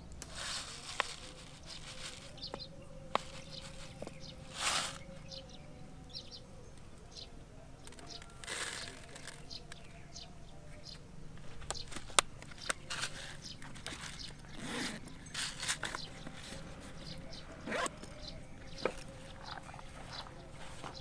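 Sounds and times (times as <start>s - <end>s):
brief rustles: 0.2s - 5.1s, 11.4s - 21.0s.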